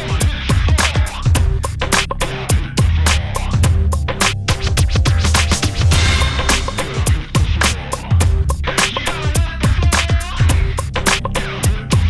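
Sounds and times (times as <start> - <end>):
heavy kick drum beat: 0.0 - 11.0, 11.6 - 12.0
dance music: 2.0 - 8.4
sharp percussion hits: 3.1 - 8.5.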